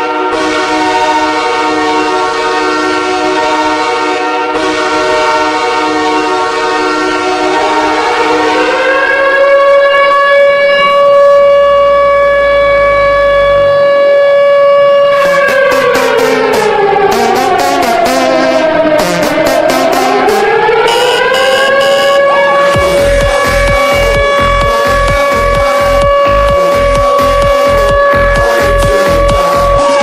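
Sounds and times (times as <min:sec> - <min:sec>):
goal horn blaring: 0:00.0 - 0:30.0.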